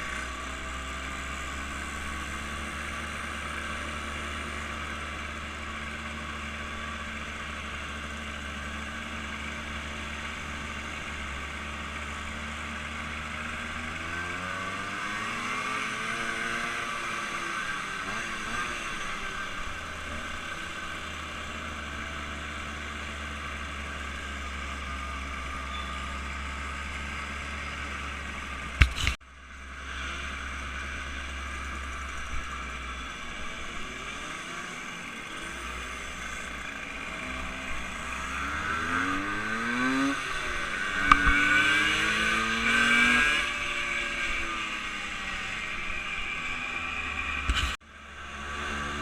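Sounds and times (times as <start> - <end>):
vehicle engine running: 0.0 - 49.0
engine passing by: 23.7 - 49.0
sharp click: 28.8 - 29.2, 41.0 - 41.4.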